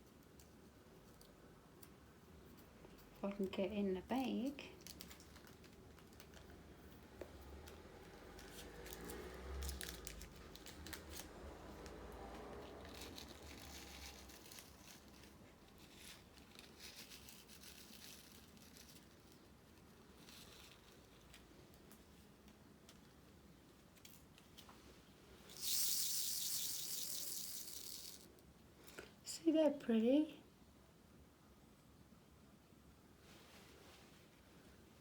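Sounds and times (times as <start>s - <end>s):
plastic bag crinkling: 4.2s - 6.9s, 8.3s - 21.9s, 25.5s - 28.3s.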